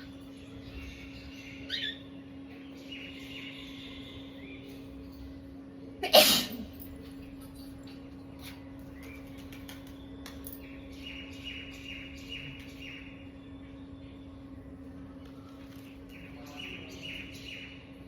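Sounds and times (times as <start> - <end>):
birds chirping: 0.0 - 18.0
steady low hum: 0.0 - 18.0
person sneezing: 6.0 - 6.6.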